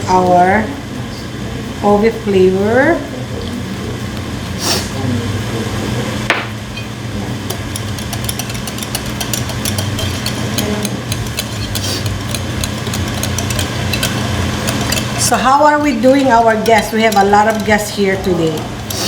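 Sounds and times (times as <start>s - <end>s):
steady low hum: 0.0s - 19.0s
utensil clicking against bowl: 7.4s - 19.0s.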